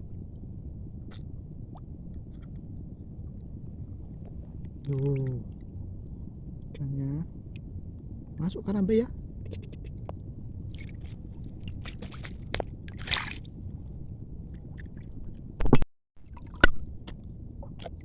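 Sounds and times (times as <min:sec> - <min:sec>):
shallow water sloshing and splashing: 0:10.7 - 0:15.4, 0:16.2 - 0:18.0.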